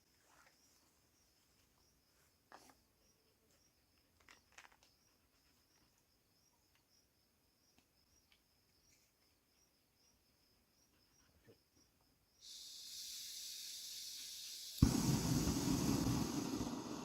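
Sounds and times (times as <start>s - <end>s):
insect chirping: 0.2s - 17.0s.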